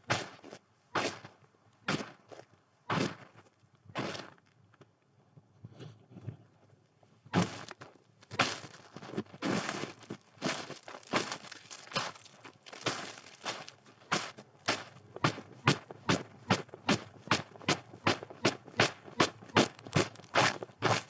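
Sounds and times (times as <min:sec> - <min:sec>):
footsteps crunching in snow: 0:08.5 - 0:21.0.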